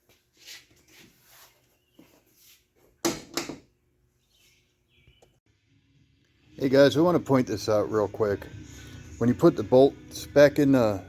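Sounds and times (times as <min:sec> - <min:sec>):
soft scrapes and rustles: 0:00.0 - 0:03.0.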